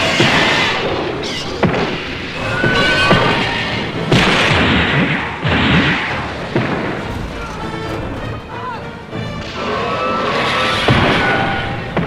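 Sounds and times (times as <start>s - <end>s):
film soundtrack music: 0.0s - 12.0s
heavy booming impacts: 6.2s - 9.5s.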